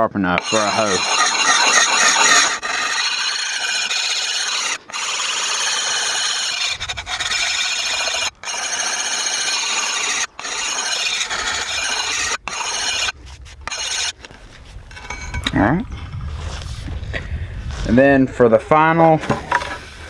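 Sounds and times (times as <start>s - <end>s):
sharpening stone grating on steel: 0.4s - 14.2s.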